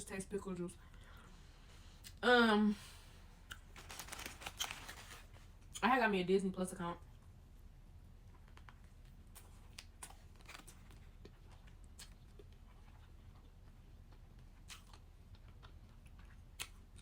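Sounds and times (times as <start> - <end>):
chewing a sandwich: 8.0 - 17.0.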